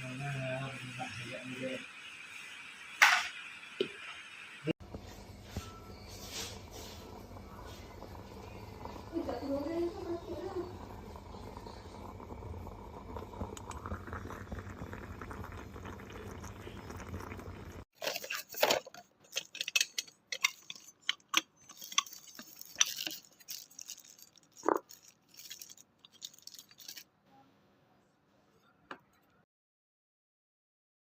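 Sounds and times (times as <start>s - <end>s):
moka pot gurgling: 0.0s - 5.4s, 6.1s - 23.7s
metal and glass clinking: 18.0s - 27.0s.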